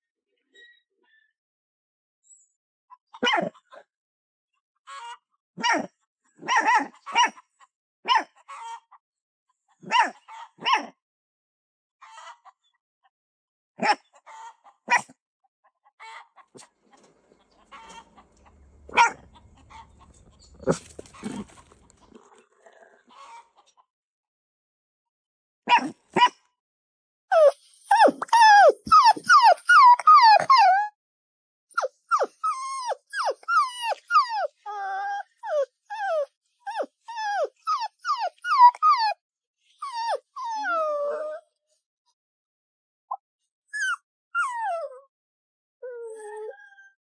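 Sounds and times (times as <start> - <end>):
puppy yapping and barking: 17.4 - 22.2, 25.7 - 26.4, 27.3 - 30.9, 31.8 - 39.2, 39.8 - 41.4, 43.7 - 45.0.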